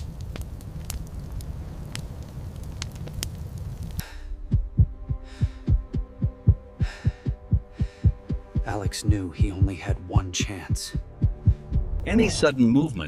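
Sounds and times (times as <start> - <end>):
low rumbling with crackles: 0.0 - 13.0
steady low drone: 4.0 - 12.6
heartbeat thuds: 4.4 - 12.1.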